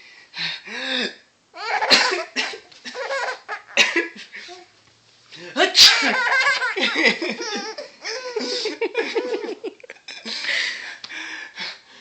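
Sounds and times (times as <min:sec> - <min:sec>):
baby giggling: 0:01.6 - 0:04.7, 0:05.8 - 0:09.6.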